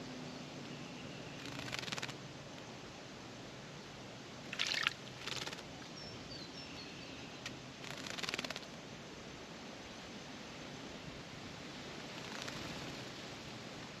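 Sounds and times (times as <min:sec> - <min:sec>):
bird splashing and fluttering: 0:01.4 - 0:02.2, 0:04.4 - 0:05.7, 0:07.8 - 0:08.8, 0:12.2 - 0:13.0.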